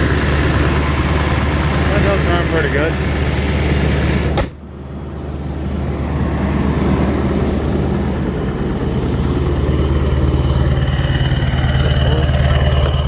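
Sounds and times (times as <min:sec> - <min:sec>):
diesel engine idling: 0:00.0 - 0:13.0.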